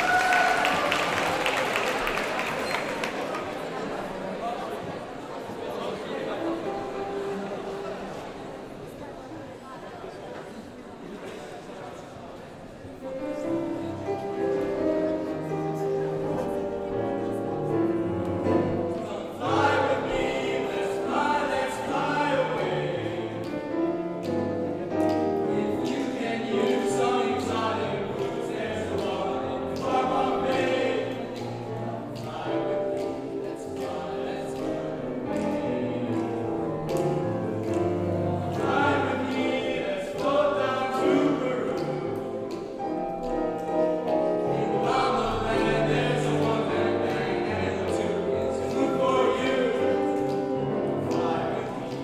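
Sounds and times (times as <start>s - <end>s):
choir singing: 13.0s - 24.0s, 24.8s - 43.0s, 43.7s - 52.0s.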